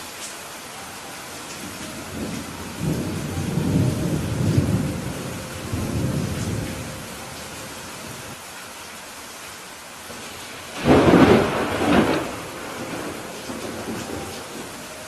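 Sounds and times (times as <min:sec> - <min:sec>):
rain hissing: 0:00.0 - 0:15.0
thunder rumbling: 0:01.4 - 0:08.4, 0:10.1 - 0:15.0.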